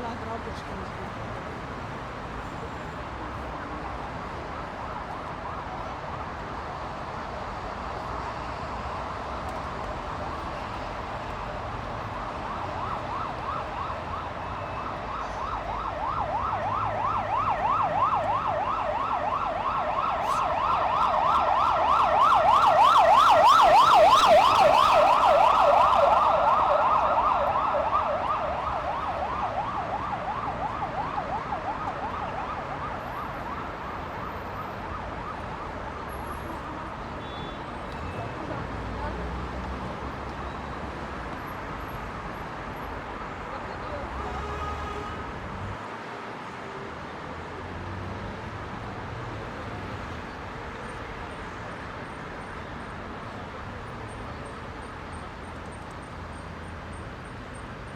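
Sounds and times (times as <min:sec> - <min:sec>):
heavy road traffic rumble: 0:00.0 - 0:57.9
ambulance siren yelping: 0:12.3 - 0:35.8.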